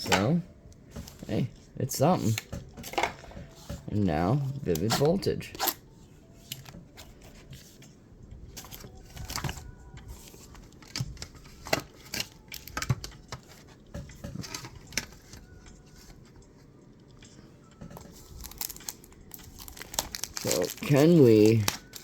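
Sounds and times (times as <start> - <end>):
rustling of card and foil: 8.5 - 16.3, 18.0 - 22.0.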